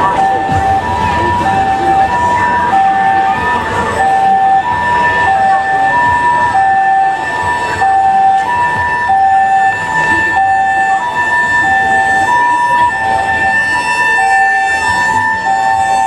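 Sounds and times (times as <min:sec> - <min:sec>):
two-tone ambulance siren: 0:00.0 - 0:16.0.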